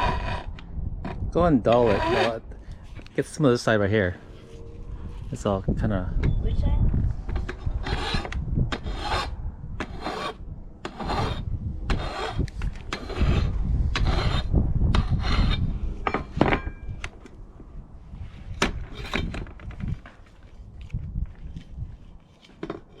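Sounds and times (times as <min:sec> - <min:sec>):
hand file rasping on metal: 0:01.7 - 0:02.4, 0:07.8 - 0:15.7.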